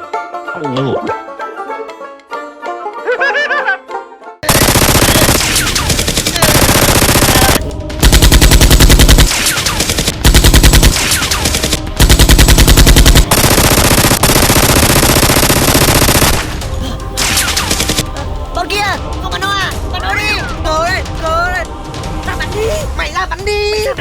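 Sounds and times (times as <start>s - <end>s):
automatic machine-gun fire: 4.5s - 16.6s, 17.2s - 18.0s
heavy bass-laden gunshots: 4.5s - 18.0s.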